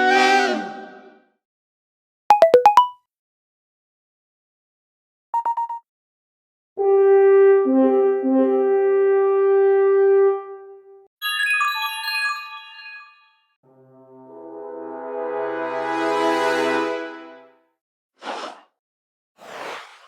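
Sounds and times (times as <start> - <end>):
short notification beeps: 2.3 - 3.0, 5.4 - 5.8
high chimes stepping downward: 11.2 - 13.3.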